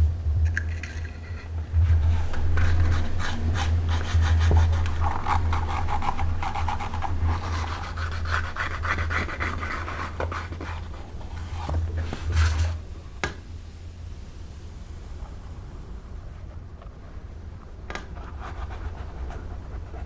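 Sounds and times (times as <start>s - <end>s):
steady low hum: 0.0s - 20.0s
rubbing and scraping leather: 1.8s - 12.8s.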